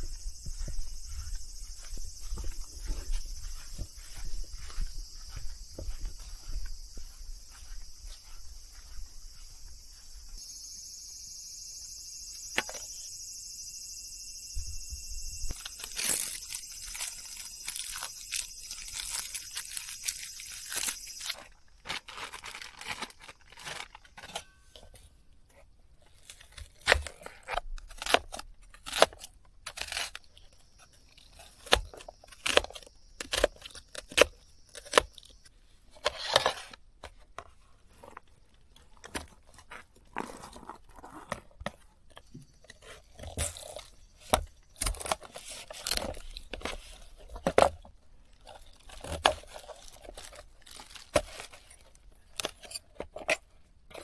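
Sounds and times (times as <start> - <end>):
tearing and rustling: 15.5 - 24.5, 42.9 - 53.4.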